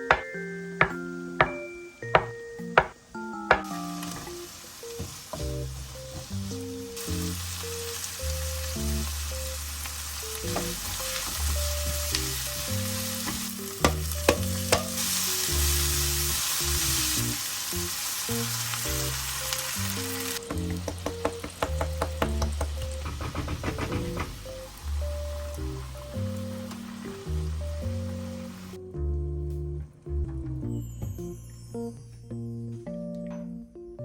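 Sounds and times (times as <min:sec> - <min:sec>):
food sizzling in hot oil: 0:03.6 - 0:23.2, 0:24.2 - 0:28.8.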